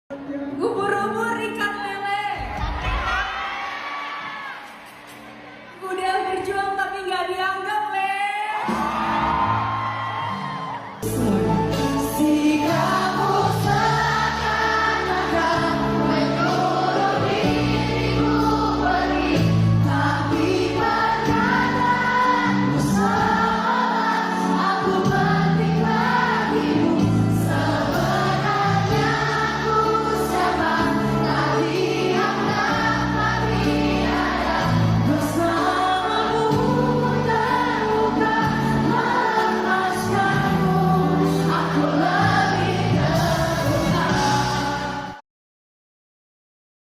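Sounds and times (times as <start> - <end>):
group of voices singing: 11.0 - 45.2.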